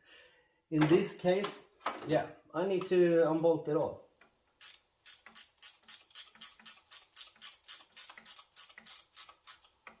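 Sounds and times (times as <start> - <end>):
ratchet wrench clicking: 4.6 - 9.8.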